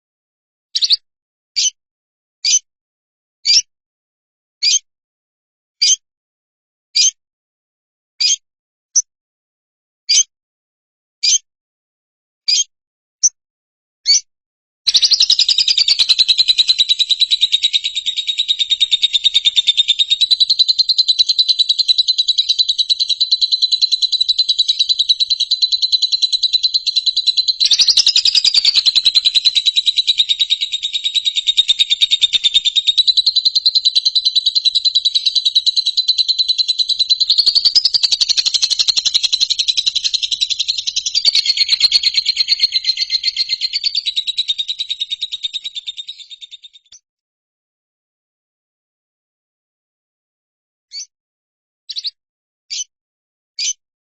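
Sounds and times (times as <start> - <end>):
high-pitched bird trill: 0.8 - 1.0, 1.6 - 1.8, 4.6 - 4.8, 14.9 - 47.0, 51.9 - 52.9.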